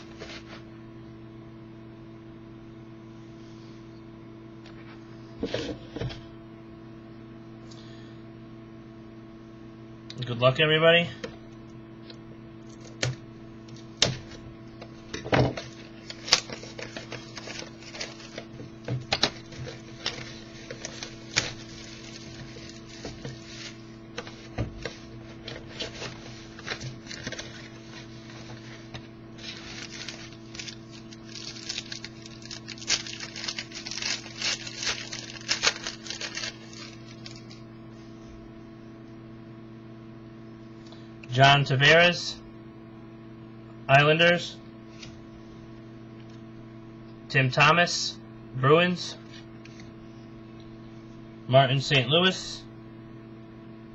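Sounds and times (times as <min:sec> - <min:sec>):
steady electrical hum: 0:00.0 - 0:53.9
plastic wrappers crinkling and tearing: 0:15.5 - 0:37.6.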